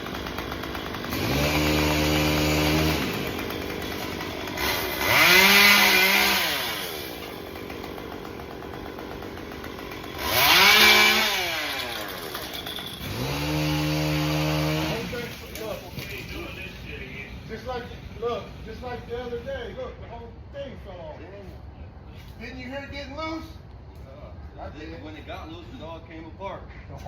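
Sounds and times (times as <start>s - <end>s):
chainsaw idling and revving: 0.0s - 16.5s.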